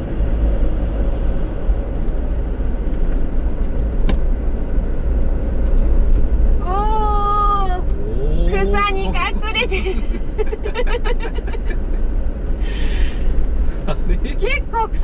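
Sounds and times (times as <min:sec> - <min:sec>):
car engine and tyres rumbling: 0:00.0 - 0:15.0
person's voice holding a long sound: 0:08.0 - 0:09.4.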